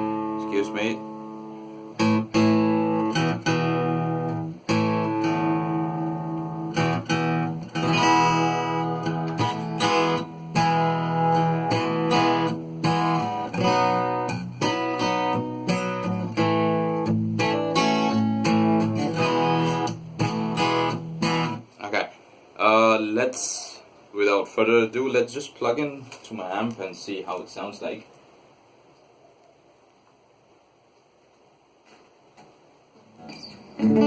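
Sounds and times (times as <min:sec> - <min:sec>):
acoustic guitar strumming and picking: 0:00.0 - 0:21.7, 0:33.2 - 0:34.0.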